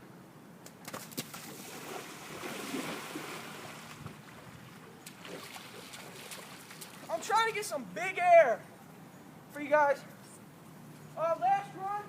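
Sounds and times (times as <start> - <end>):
floodwater splashing and hissing: 1.1 - 7.3.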